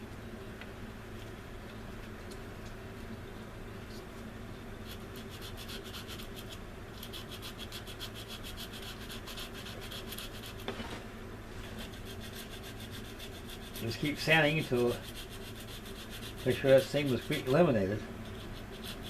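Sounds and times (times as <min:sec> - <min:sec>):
hand sanding plastic: 0:04.9 - 0:10.9, 0:11.6 - 0:19.0.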